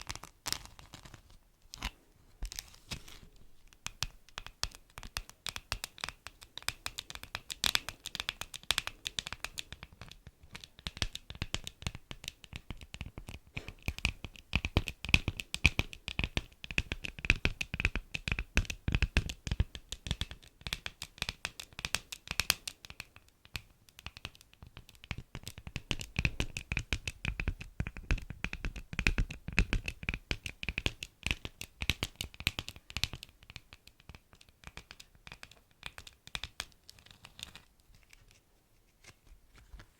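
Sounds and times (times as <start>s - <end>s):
wax wrap crinkling: 0.0s - 11.0s, 34.9s - 39.9s.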